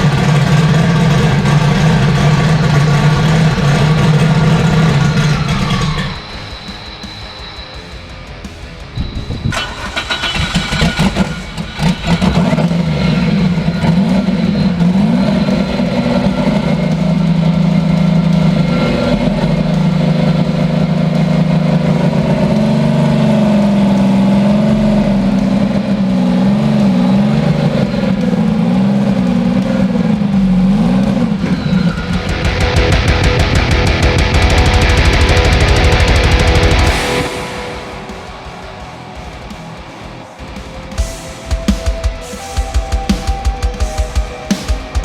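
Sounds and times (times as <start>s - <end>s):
car engine running: 0.0s - 6.4s, 9.5s - 39.6s.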